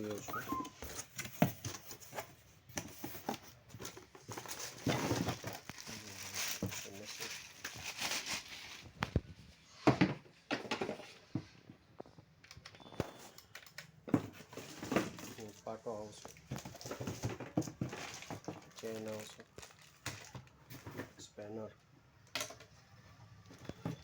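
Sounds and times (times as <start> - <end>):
packaging crinkling and tearing: 3.8 - 9.2, 15.2 - 20.5.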